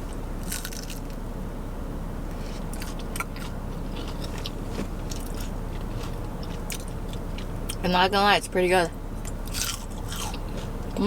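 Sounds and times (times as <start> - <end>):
steady low hum: 0.0 - 11.0
chewing crunchy food: 0.4 - 1.2, 2.4 - 7.8, 9.2 - 11.0.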